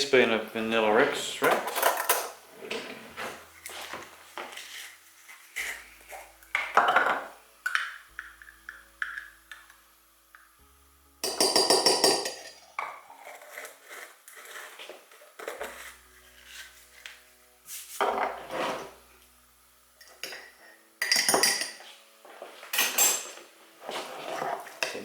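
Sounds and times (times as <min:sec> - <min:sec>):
spoon clinking and scraping in mug: 0:11.2 - 0:16.7, 0:20.0 - 0:21.8.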